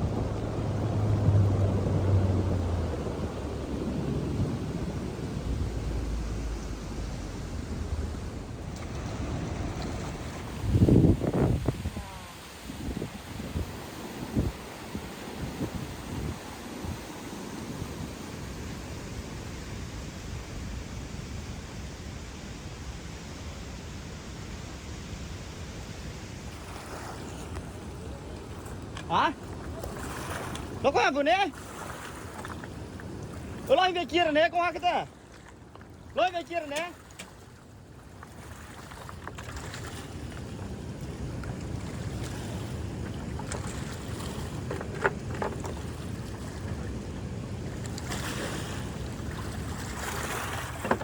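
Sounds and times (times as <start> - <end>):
wind buffeting microphone: 0.0 - 19.5.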